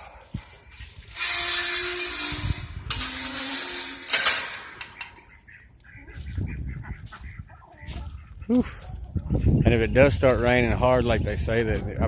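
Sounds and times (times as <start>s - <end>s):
metal gate scraping and squealing: 0.8s - 5.4s
metal gate clanking shut: 1.1s - 5.3s.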